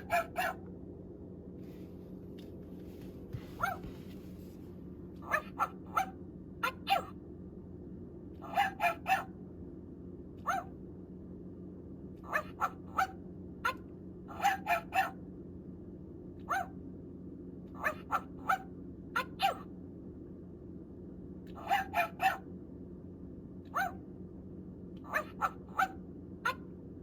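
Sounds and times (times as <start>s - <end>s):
toy puppy barks: 0.0s - 0.7s, 5.2s - 7.2s, 8.4s - 9.3s, 10.4s - 10.8s, 12.2s - 15.2s, 16.4s - 16.8s, 17.7s - 19.7s, 21.5s - 22.5s, 23.7s - 24.0s, 25.0s - 26.7s.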